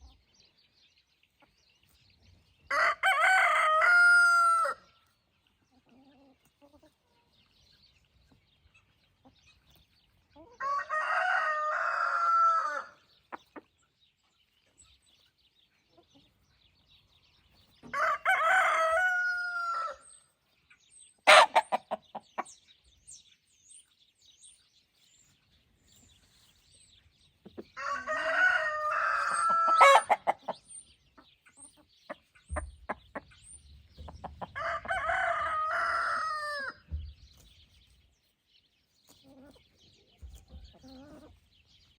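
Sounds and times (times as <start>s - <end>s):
roosters crowing: 2.7s - 4.9s, 10.6s - 13.1s, 17.8s - 20.2s, 21.3s - 21.8s, 27.8s - 30.5s, 34.3s - 36.9s
hens clucking: 21.2s - 22.7s, 27.4s - 37.5s, 39.1s - 41.5s.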